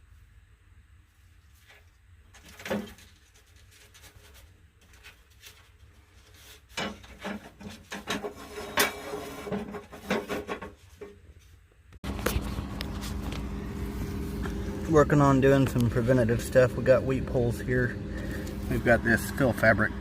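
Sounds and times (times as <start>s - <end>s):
material rubbing and scraping: 1.1s - 14.8s.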